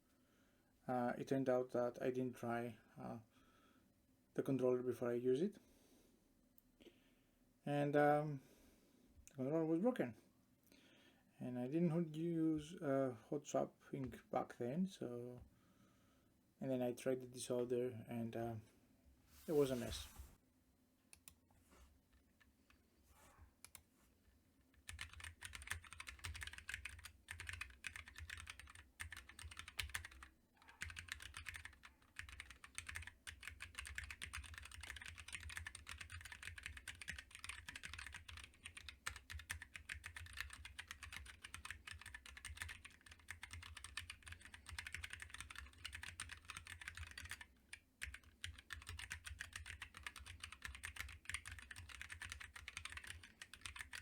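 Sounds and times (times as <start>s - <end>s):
typing on mechanical keyboard: 24.8s - 54.0s.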